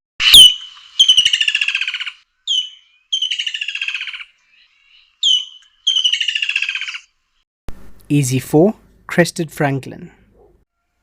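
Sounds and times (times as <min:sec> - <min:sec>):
kingfisher calling: 0:00.2 - 0:07.1.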